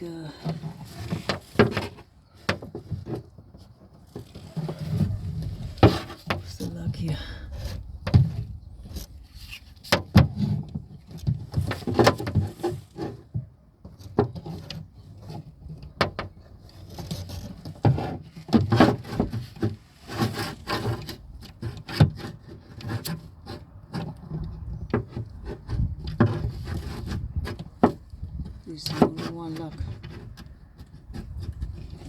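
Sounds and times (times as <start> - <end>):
parts rubbing on door panel: 0.5 - 6.5, 14.1 - 32.0.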